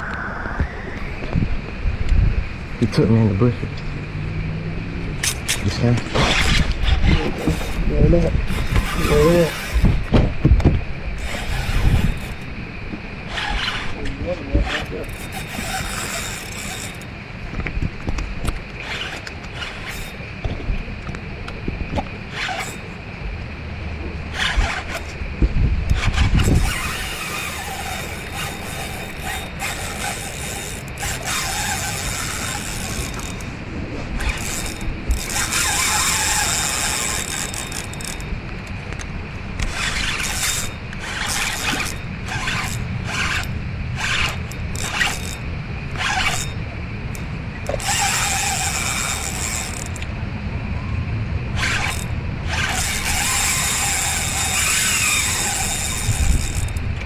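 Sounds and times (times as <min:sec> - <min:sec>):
fishing reel clicking: 0:06.5 - 0:07.9, 0:08.5 - 0:10.0, 0:11.2 - 0:12.5, 0:13.3 - 0:17.1, 0:22.3 - 0:22.8, 0:25.9 - 0:33.5, 0:34.2 - 0:38.3, 0:39.6 - 0:45.4, 0:46.0 - 0:50.1, 0:51.6 - 0:56.8.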